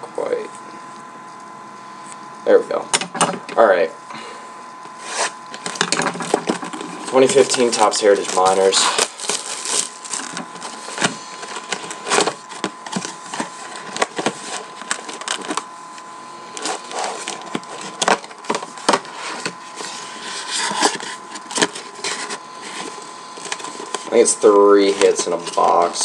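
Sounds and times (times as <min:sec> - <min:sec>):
card packaging crackling and ripping: 0:05.1 - 0:15.8, 0:16.4 - 0:26.0.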